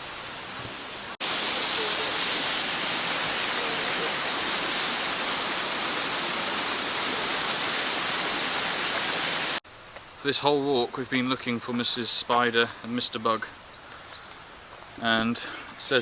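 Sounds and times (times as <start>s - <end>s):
waterfall rushing: 0.0s - 9.6s.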